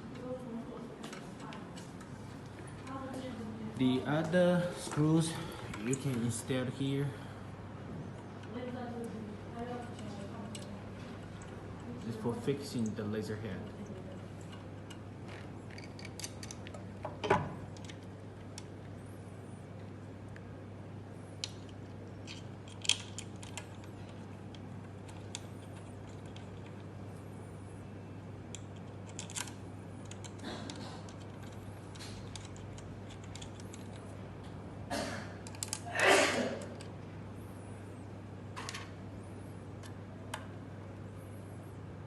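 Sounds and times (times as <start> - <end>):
steady low hum: 0.0 - 42.0
metal parts clicking and tapping: 14.1 - 18.7, 21.4 - 26.8, 28.5 - 34.1, 35.4 - 35.9.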